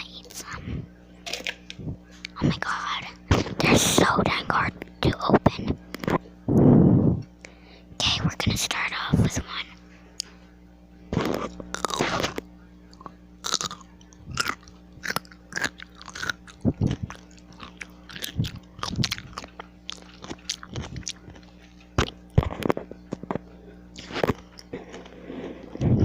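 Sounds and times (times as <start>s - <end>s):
biting into a pickle: 11.2s - 25.9s
wet crunchy chewing: 11.2s - 26.0s.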